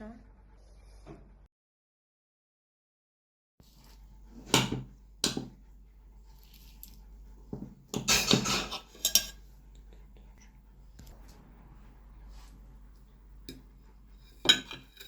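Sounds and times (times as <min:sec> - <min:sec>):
kitchenware clattering: 0:04.3 - 0:05.6, 0:06.4 - 0:09.5, 0:13.5 - 0:15.0
kitchenware knocks: 0:04.4 - 0:05.6, 0:07.5 - 0:09.3, 0:14.4 - 0:15.0.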